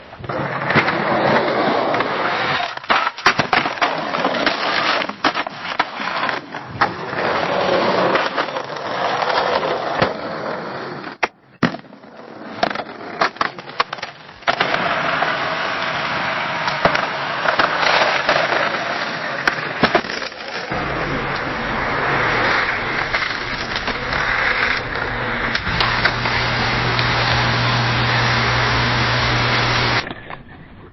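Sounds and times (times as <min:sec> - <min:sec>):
skateboard clicks and knocks: 0:00.0 - 0:27.6
skateboard wheels rolling on pavement: 0:00.0 - 0:30.9
low steady hum: 0:20.7 - 0:30.1.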